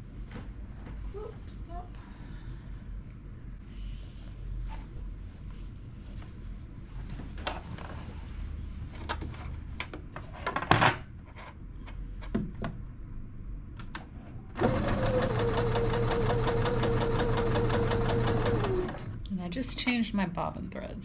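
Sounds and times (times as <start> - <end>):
electric sewing machine running: 14.6 - 19.2.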